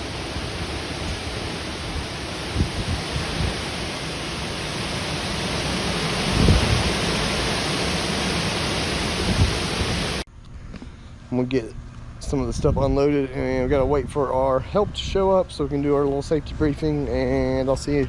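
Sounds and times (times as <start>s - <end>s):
storm wind rushing: 0.0s - 10.2s
wind gusts buffeting microphone: 0.0s - 10.2s, 12.2s - 15.4s.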